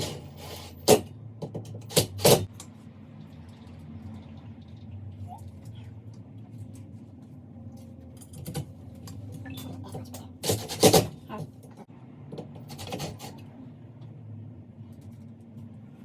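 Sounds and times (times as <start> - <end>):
steady low hum: 0.0 - 16.0
metal tools clinking and rattling: 8.1 - 11.5
metal parts clattering: 9.6 - 11.5.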